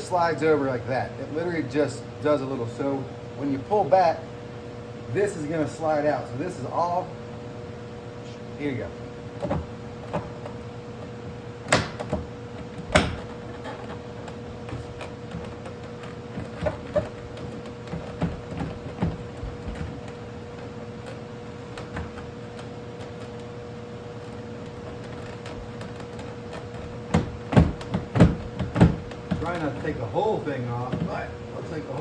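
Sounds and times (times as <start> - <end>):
steady low hum: 0.0 - 32.0
plastic panel knocking and rattling: 9.4 - 23.5, 24.2 - 30.1.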